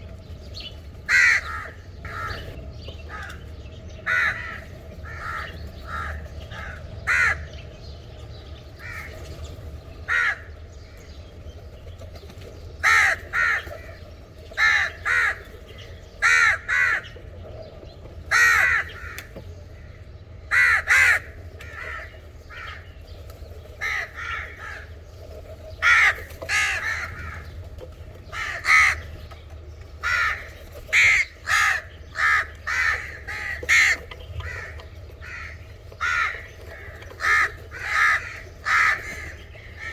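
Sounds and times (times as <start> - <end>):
crows cawing: 1.0 - 7.6, 8.8 - 9.2, 10.0 - 11.0, 12.8 - 17.3, 18.2 - 23.0, 23.8 - 25.1, 25.8 - 27.5, 28.2 - 29.2, 30.0 - 39.9.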